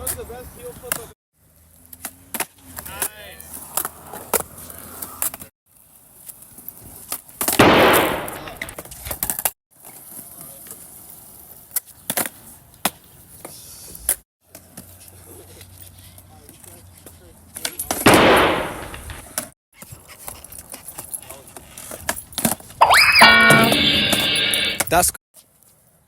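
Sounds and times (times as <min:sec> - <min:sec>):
skateboard clacking on hard ground: 0:17.7 - 0:19.5.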